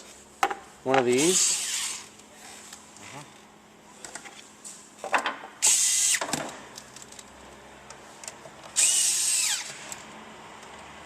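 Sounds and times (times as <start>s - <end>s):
power tool whirring on fasteners: 1.2s - 2.2s, 5.6s - 6.5s, 8.6s - 10.2s.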